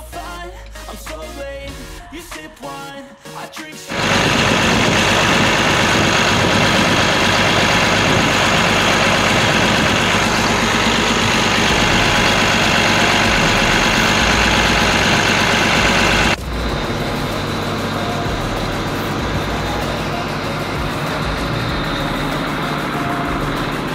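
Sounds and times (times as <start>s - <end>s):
diesel engine running: 3.9s - 23.9s.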